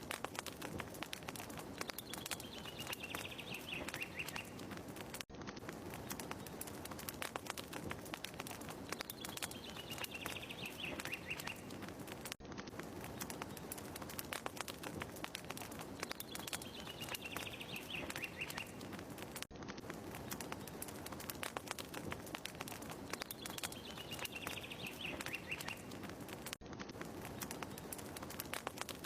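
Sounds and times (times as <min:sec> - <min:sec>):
fireplace fire crackling: 0:00.0 - 0:29.0
bird-like chirps: 0:01.6 - 0:04.8, 0:08.8 - 0:12.0, 0:15.9 - 0:19.1, 0:23.0 - 0:26.2.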